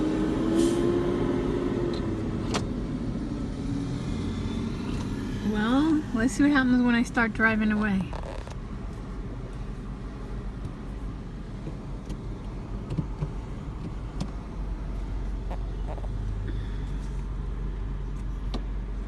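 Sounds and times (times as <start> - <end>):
car engine hum from inside cabin: 0.0 - 19.0.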